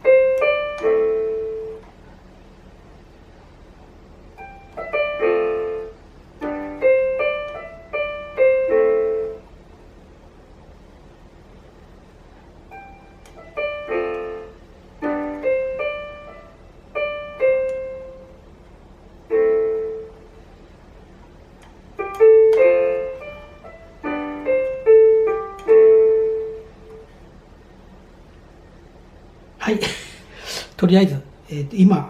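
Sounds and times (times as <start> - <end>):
electronic keyboard piano chords: 0.0 - 29.4.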